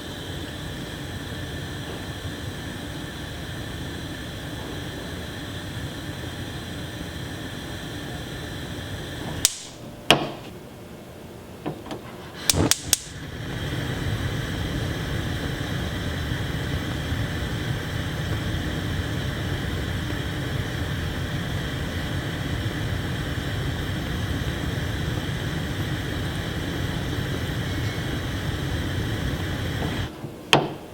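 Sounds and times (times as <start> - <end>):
gas burner flame hissing: 0.0 - 10.6, 12.0 - 30.9
igniter clicks: 9.4 - 10.4, 12.4 - 13.4.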